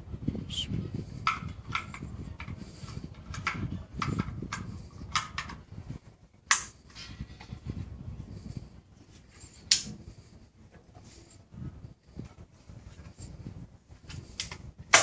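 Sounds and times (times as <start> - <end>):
shotgun and case clicking: 6.5 - 6.8, 14.4 - 15.0.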